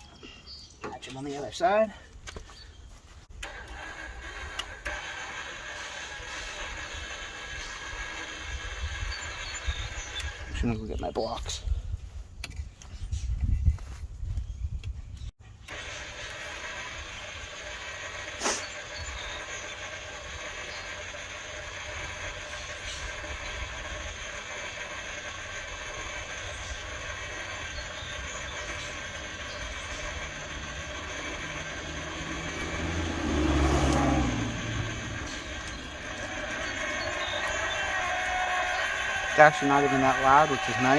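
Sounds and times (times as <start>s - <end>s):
electric gear motor running: 16.0s - 40.9s.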